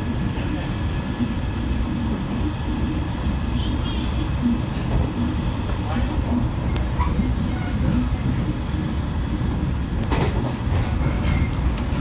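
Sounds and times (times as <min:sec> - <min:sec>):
train wheels rumbling on rails: 0:04.2 - 0:12.0
rail joint clack: 0:09.9 - 0:12.0.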